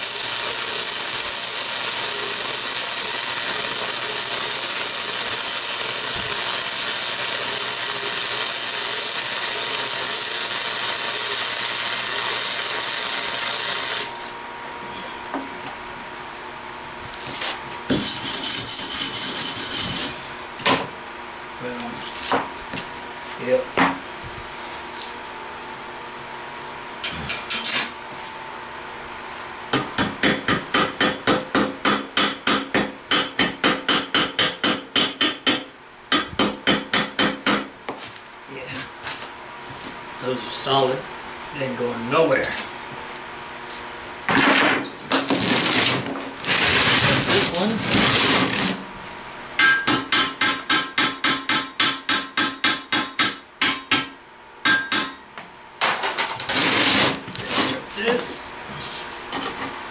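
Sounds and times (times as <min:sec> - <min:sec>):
hammer striking metal: 0:49.6 - 0:55.4.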